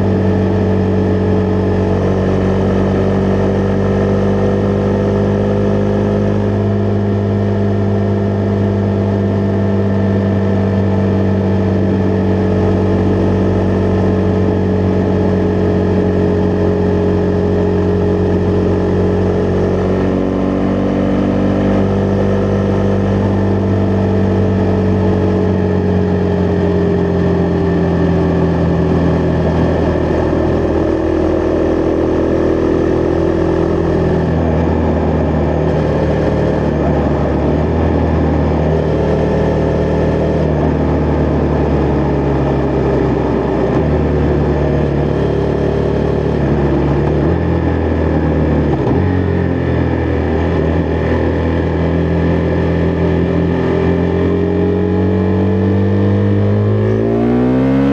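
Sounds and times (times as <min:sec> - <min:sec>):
motorcycle engine running: 0:00.0 - 0:57.9.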